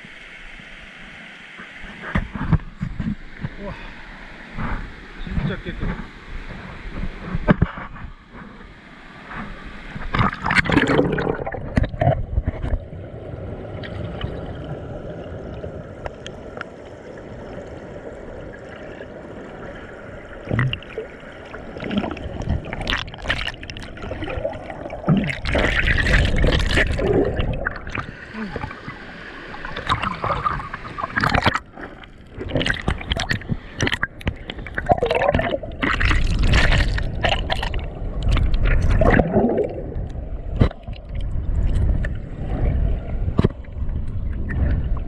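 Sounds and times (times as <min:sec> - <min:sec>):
mountain stream gurgling: 0:09.1 - 0:41.1.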